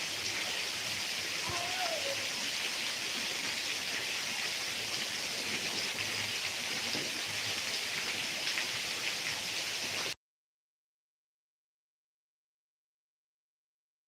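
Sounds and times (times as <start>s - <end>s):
heavy rain: 0.0s - 10.2s.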